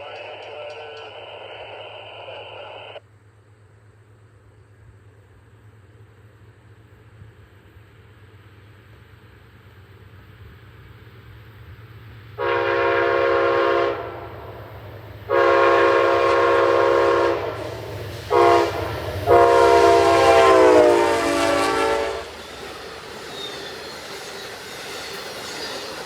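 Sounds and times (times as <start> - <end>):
low rumble of train: 0.0 - 26.0
locomotive air horn blasts: 12.4 - 14.6, 15.2 - 22.4.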